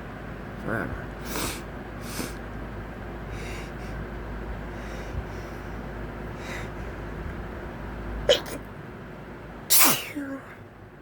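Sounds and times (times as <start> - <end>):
man sniffing: 1.2 - 2.4.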